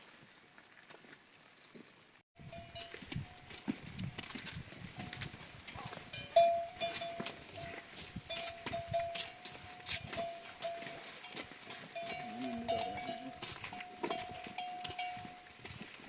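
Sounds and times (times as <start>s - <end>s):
hooves clicking: 0.6s - 16.0s
livestock neck bells ringing: 2.4s - 3.7s, 5.0s - 15.9s.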